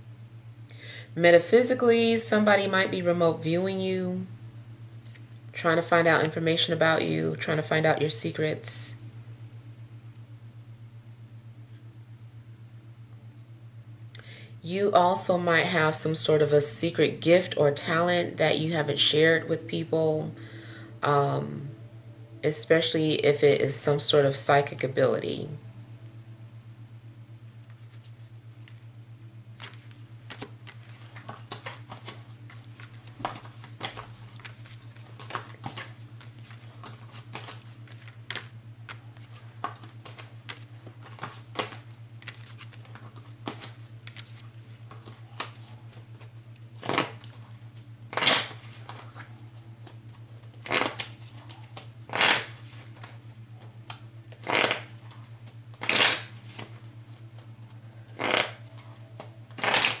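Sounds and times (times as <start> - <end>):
steady low hum: 0.0 - 60.0
cards shuffling: 29.5 - 47.4, 48.1 - 53.2, 53.9 - 57.5, 58.2 - 60.0
cards clicking and tapping: 29.6 - 44.3.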